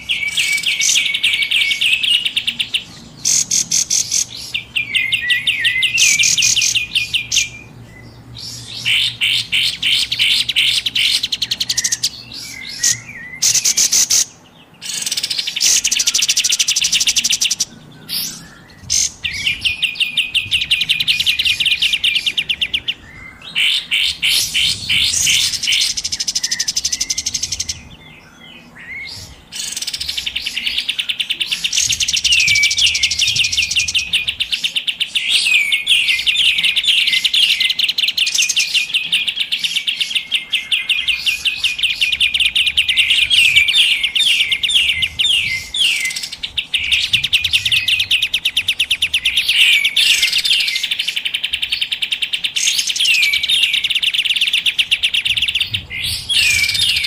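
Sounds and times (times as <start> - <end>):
bird chattering trills: 0.0 - 57.0.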